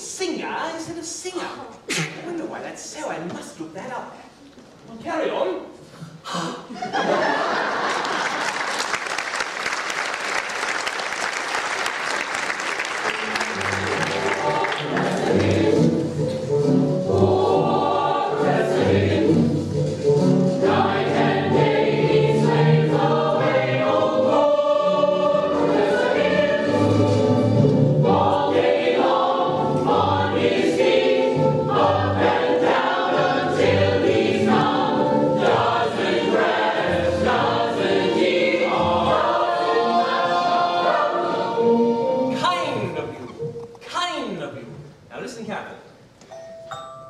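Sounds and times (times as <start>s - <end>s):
musical accompaniment: 12.0s - 43.8s, 46.2s - 47.0s
chorus singing: 12.9s - 43.2s.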